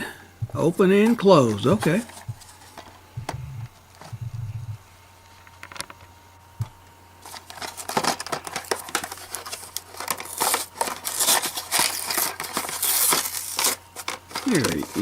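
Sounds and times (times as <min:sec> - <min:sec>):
toy packaging crinkling: 0:07.2 - 0:15.0.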